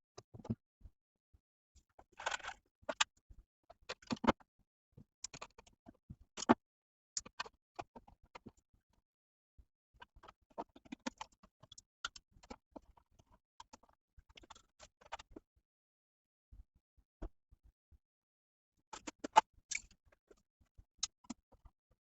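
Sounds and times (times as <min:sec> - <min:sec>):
small clicks and taps on wiring: 0:21.0 - 0:21.7.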